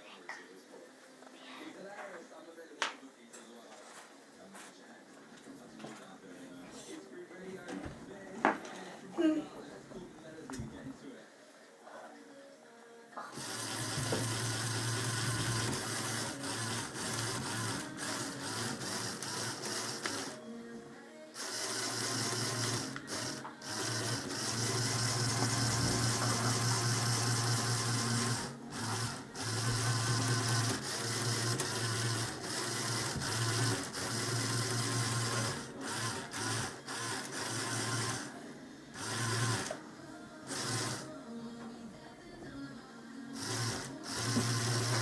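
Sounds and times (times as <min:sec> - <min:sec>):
toy piston engine whirring and rattling: 0:13.4 - 0:20.4, 0:21.4 - 0:38.3, 0:39.0 - 0:39.8, 0:40.5 - 0:41.1, 0:43.4 - 0:45.0.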